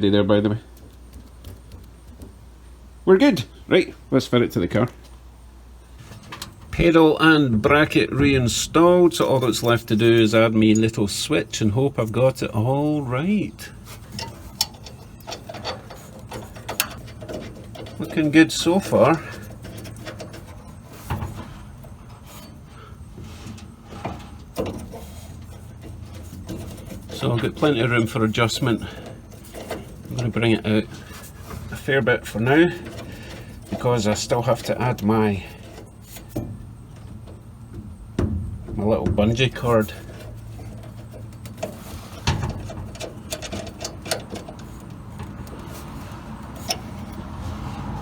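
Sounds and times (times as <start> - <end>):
low steady hum: 0.0 - 48.0
rubbing: 6.0 - 48.0
small metal parts clicking: 13.8 - 22.9.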